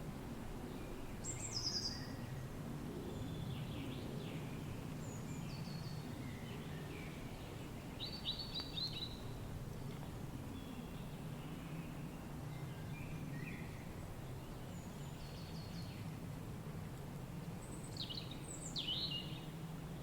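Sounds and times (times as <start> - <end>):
wild birds singing: 0.7 - 2.4, 3.1 - 9.4, 17.6 - 20.0.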